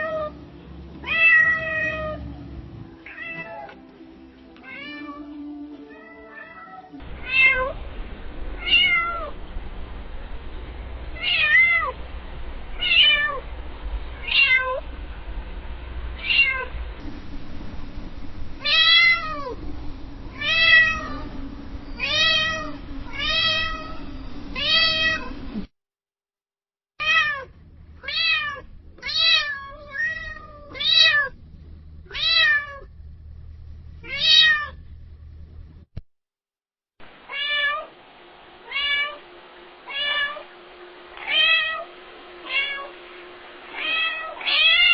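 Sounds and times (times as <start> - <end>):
cats meowing: 1.0 - 2.2, 3.0 - 3.8, 16.2 - 16.7, 20.3 - 25.5
low rumble: 7.0 - 25.7, 27.5 - 35.9.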